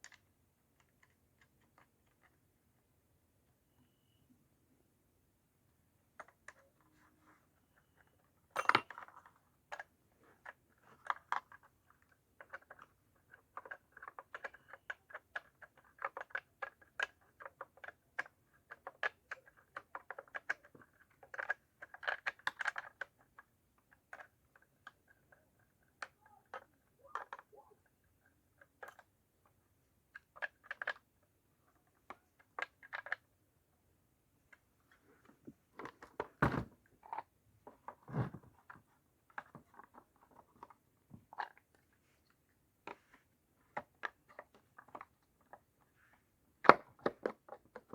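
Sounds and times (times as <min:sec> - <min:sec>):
metal tools clinking: 0:08.6 - 0:09.0.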